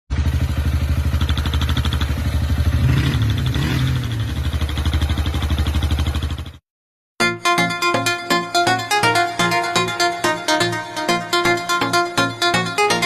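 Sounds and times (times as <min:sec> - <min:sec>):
motorcycle engine idling: 0:00.1 - 0:06.6.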